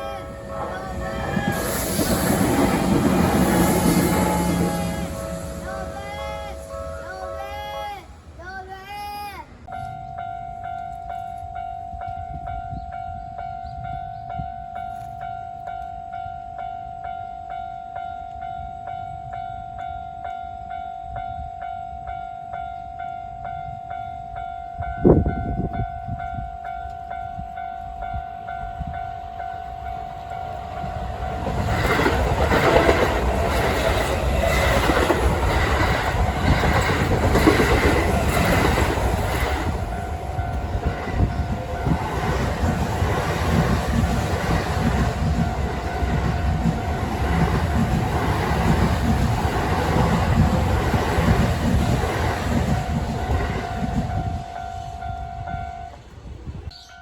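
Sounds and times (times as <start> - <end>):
level crossing warning bell: 0.0 - 8.1, 9.7 - 56.1
train horn blast: 0.0 - 8.1, 27.8 - 42.9
train wheels on track: 0.0 - 21.5, 22.8 - 56.8.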